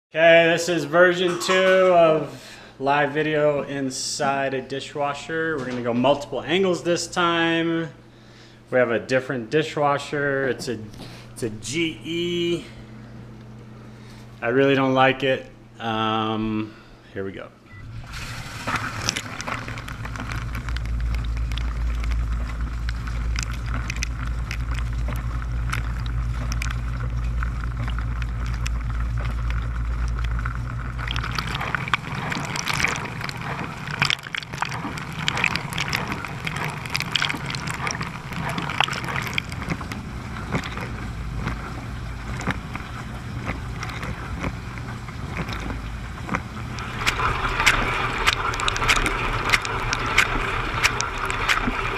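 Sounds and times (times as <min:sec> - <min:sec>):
dishwasher pump humming: 0:17.7 - 0:51.9
water spraying and splashing: 0:17.8 - 0:51.9.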